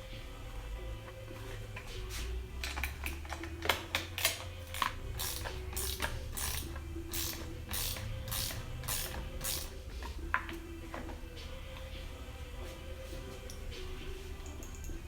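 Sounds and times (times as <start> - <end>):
hand ratchet clicking: 2.6 - 10.6.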